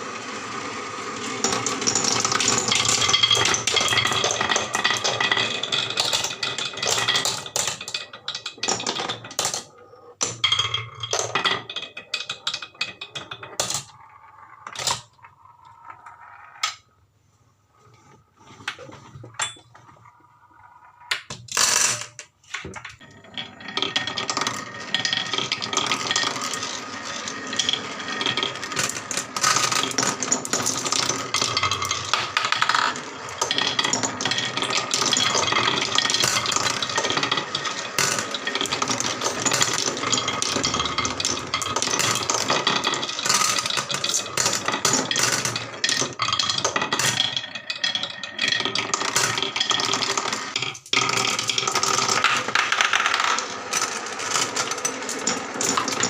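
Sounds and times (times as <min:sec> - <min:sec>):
marbles rattling down wooden run: 0:00.0 - 0:16.9, 0:18.8 - 0:56.0.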